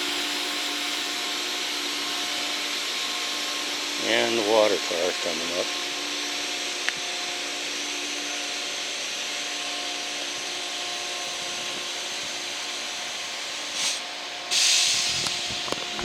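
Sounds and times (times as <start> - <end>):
steady engine hum: 0.0 - 16.0
loud hiss: 11.1 - 15.7.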